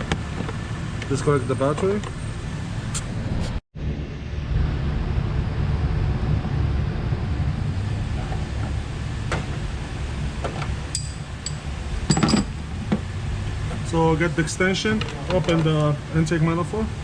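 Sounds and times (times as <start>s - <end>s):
wind rumble on microphone: 2.9s - 13.8s.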